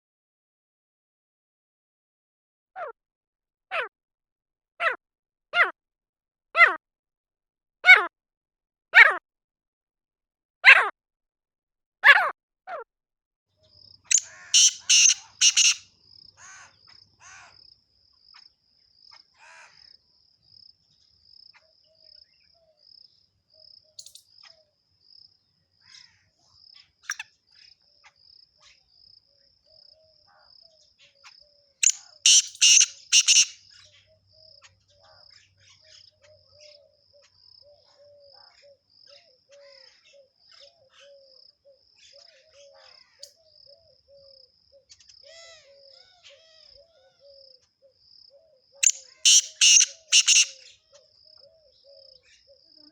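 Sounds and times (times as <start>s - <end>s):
bird calling: 14.1s - 15.8s, 31.8s - 34.2s, 48.4s - 52.9s
insects chirping: 14.1s - 18.4s, 31.8s - 34.7s, 48.2s - 50.7s.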